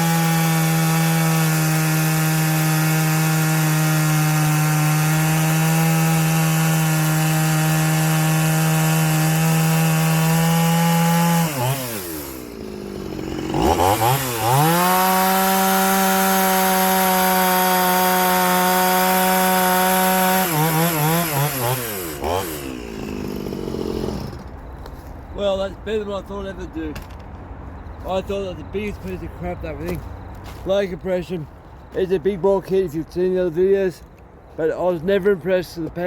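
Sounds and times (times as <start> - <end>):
chainsaw cutting wood: 0.0 - 24.6.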